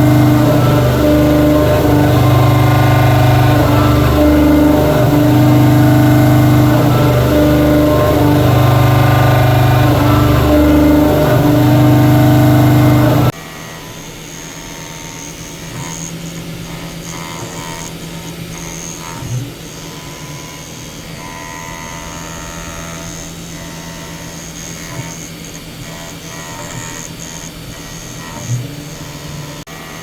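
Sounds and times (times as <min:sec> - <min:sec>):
quiet whir: 0:00.0 - 0:13.3
machine motors humming: 0:00.0 - 0:30.0.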